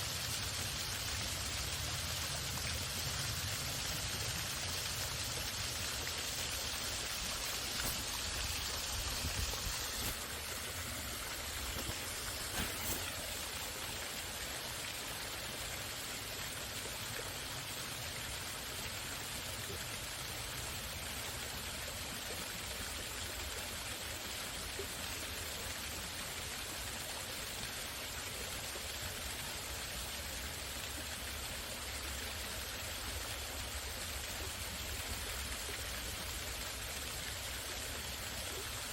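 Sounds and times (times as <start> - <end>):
waterfall rushing: 6.4 - 13.8.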